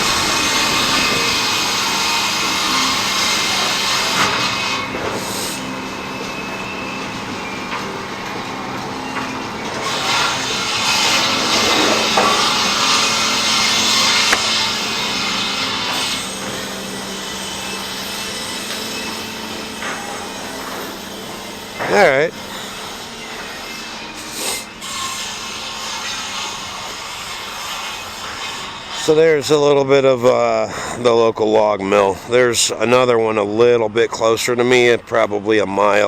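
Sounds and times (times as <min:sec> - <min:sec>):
steady hum: 0:00.0 - 0:28.5
sawmill saw cutting log: 0:00.0 - 0:32.8.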